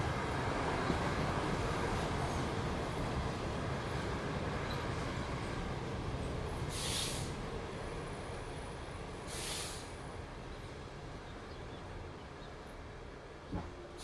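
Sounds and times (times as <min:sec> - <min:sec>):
train rumble: 0:00.0 - 0:14.0
air brake hisses: 0:06.7 - 0:07.4, 0:09.3 - 0:09.9.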